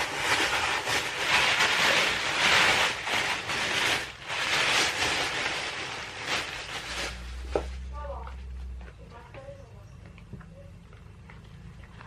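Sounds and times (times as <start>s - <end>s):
packaging rustling and crinkling: 0.0s - 8.0s.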